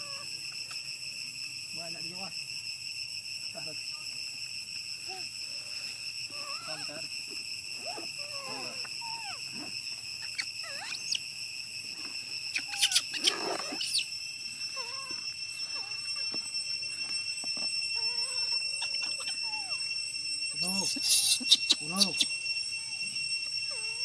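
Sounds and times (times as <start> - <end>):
high insect drone: 0.0 - 24.0
baby monkey crying: 6.3 - 7.0, 7.8 - 11.2, 12.5 - 14.1, 18.0 - 19.8, 20.6 - 22.4.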